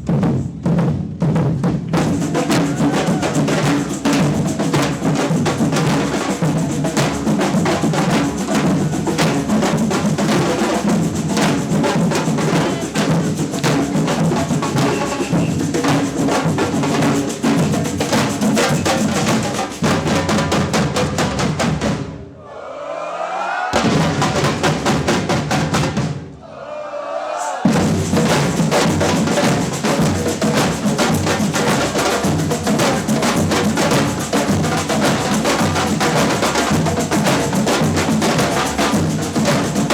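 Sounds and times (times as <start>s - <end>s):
samba percussion band drumming: 0.0s - 22.2s, 23.8s - 26.3s, 27.6s - 39.9s
snare drums: 0.0s - 22.2s, 23.7s - 26.4s, 27.6s - 39.9s
bass drums: 27.7s - 39.9s.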